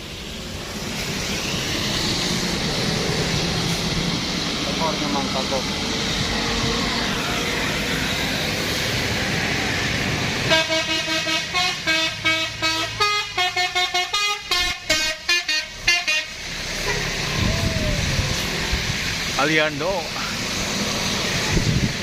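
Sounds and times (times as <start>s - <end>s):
vehicle engine and tyre noise: 0.0s - 22.0s
bus musical horn: 10.4s - 17.4s.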